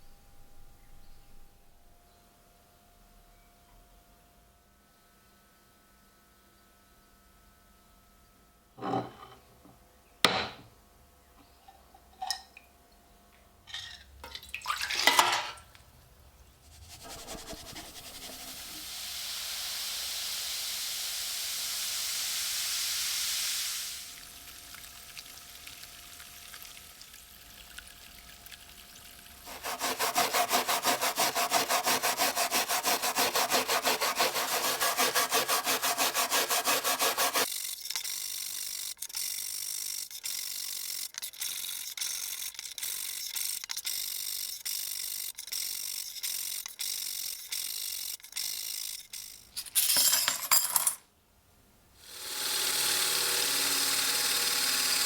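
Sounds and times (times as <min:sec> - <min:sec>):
steady hiss: 0:15.8 - 0:29.6
rasping strokes of saw or file: 0:16.6 - 0:18.8, 0:29.4 - 0:37.8.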